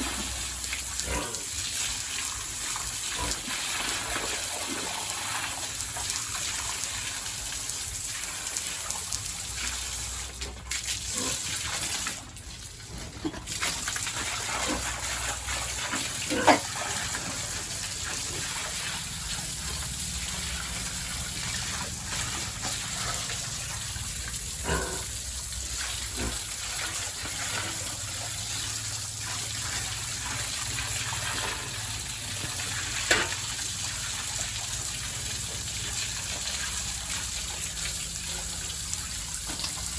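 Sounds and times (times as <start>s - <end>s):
water gushing from hose: 0.0s - 39.9s.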